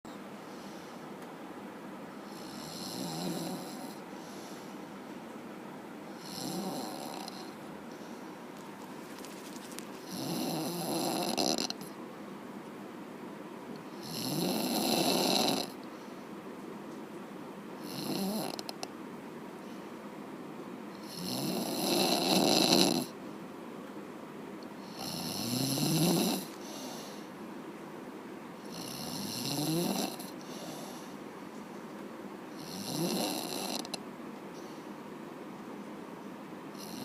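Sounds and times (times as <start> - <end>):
person snoring: 2.3 - 4.4, 6.2 - 7.6, 10.0 - 11.9, 13.9 - 15.8, 17.8 - 18.8, 21.0 - 23.1, 24.8 - 27.2, 28.6 - 31.1, 32.6 - 34.0, 36.8 - 37.0.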